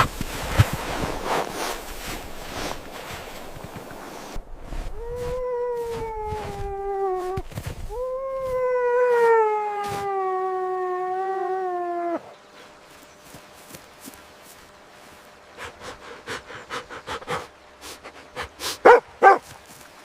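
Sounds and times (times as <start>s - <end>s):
dog howling: 5.0s - 12.3s.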